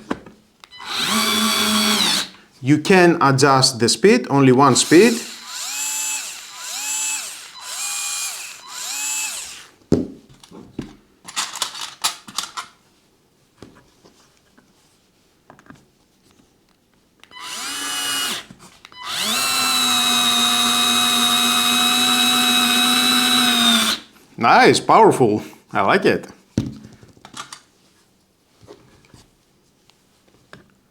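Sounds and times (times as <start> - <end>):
cordless screwdriver motor running: 0.8 - 2.3, 4.7 - 9.8, 17.3 - 24.1.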